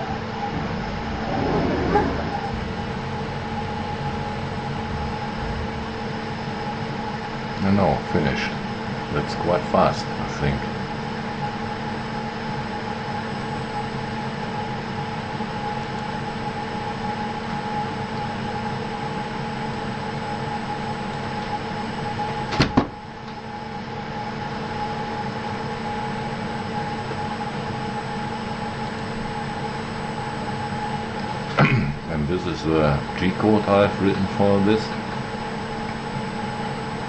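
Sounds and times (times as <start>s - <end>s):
milling machine humming: 0.0s - 11.0s.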